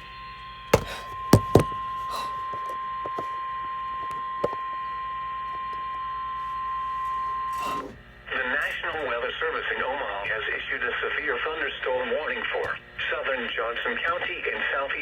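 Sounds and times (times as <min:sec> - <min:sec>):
sharp knocks: 0:00.8 - 0:01.8.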